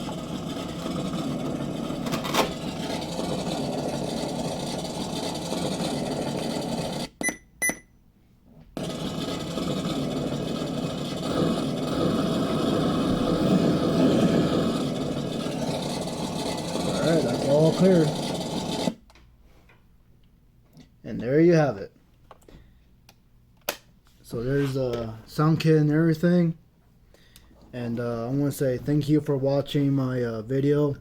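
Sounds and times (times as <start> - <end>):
simulated engine through small speaker: 8.8 - 18.9.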